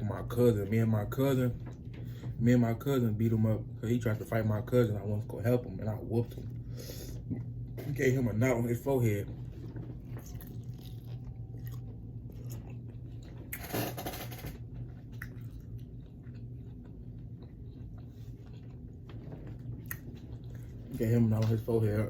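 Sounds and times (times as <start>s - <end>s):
low hum: 0.0s - 22.0s
person chewing food: 9.4s - 13.8s, 14.6s - 21.0s.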